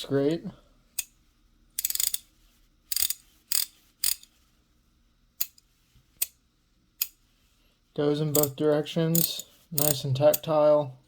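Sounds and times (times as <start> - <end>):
socket ratchet clicking: 1.8 - 2.3, 2.9 - 4.3, 8.3 - 10.5.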